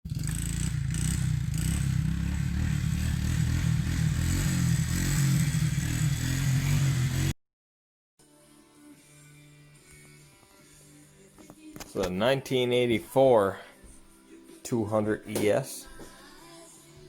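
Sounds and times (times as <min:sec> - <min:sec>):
engine running with clattering rattle: 0:00.1 - 0:07.3.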